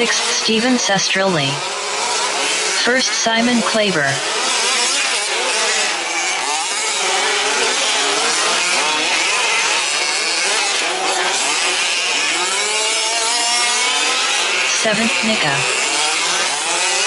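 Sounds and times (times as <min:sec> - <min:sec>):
small two-stroke engines revving: 0:00.0 - 0:17.0.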